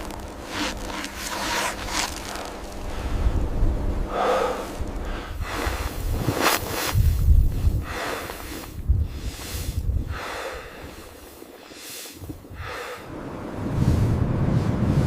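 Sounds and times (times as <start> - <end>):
wind rumbling on microphone: 0.0 - 15.0
person breathing heavily: 0.4 - 13.1.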